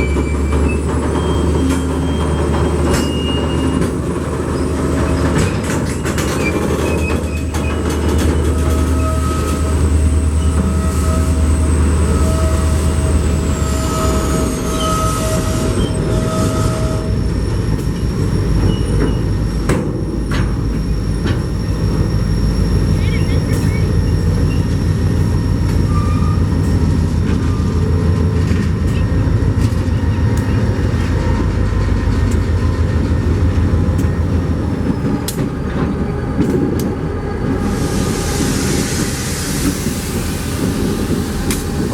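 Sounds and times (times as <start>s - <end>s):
diesel locomotive running: 0.0s - 41.9s
wheels rolling on rail: 0.0s - 41.9s
thin wheel squeal: 4.6s - 17.2s, 20.9s - 26.5s.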